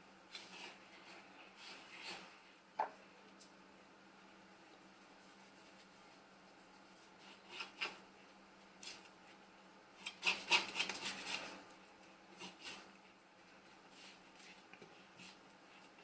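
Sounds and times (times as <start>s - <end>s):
faint steady hum: 0.0s - 16.0s
hands rubbing and scraping food: 10.0s - 13.2s.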